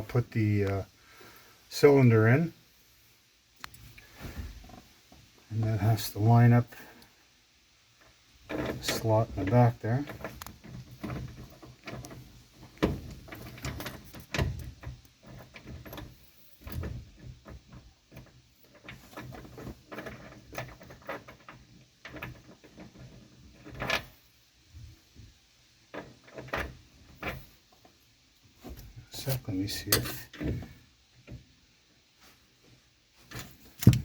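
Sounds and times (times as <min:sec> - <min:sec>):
metallic clicks and scrapes of lock: 0:10.1 - 0:24.2.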